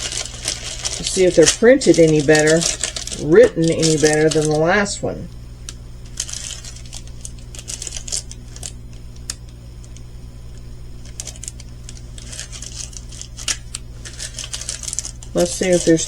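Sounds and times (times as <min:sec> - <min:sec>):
crinkling plastic bags: 0:00.0 - 0:05.0, 0:05.6 - 0:10.0, 0:11.0 - 0:16.0.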